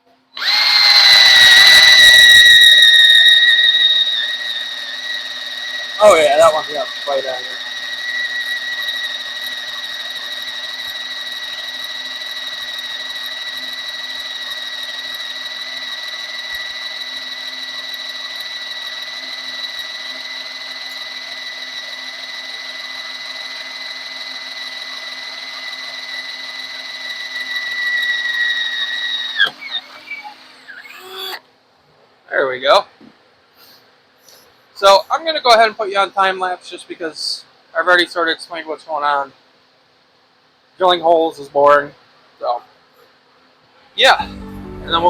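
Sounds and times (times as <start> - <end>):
power drill whining through metal: 0.4 - 31.4.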